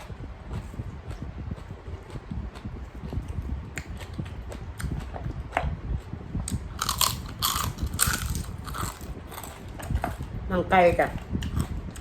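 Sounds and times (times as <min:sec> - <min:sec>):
person chewing food: 0:00.0 - 0:10.3, 0:11.4 - 0:12.0
loud crisp crunching bites: 0:06.8 - 0:09.5.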